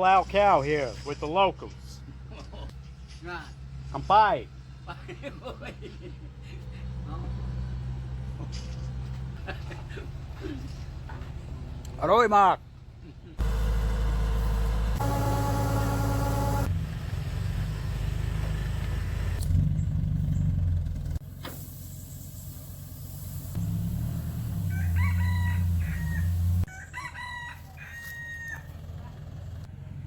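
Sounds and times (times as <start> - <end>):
low engine rumble: 0.0 - 26.7
rooster crowing: 24.6 - 28.8.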